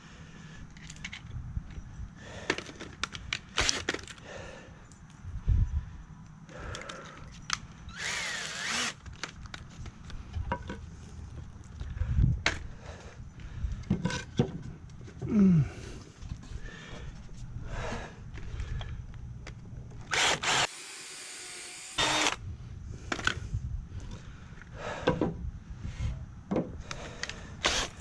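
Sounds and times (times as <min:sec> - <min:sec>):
drill whining into wood: 0:07.9 - 0:09.0, 0:20.1 - 0:22.4, 0:27.6 - 0:28.0.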